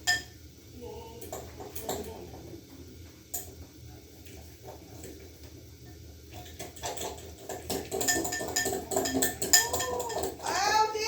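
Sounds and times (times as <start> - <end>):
dishes and utensils clattering: 0.0 - 0.4, 1.2 - 2.5, 6.3 - 10.9.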